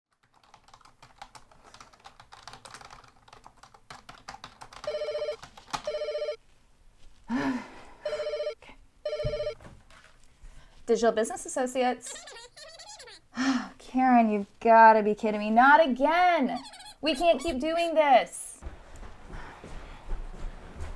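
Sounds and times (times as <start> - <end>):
computer keyboard typing: 0.1 - 6.4
desk telephone ringing: 4.8 - 6.4, 8.1 - 9.6.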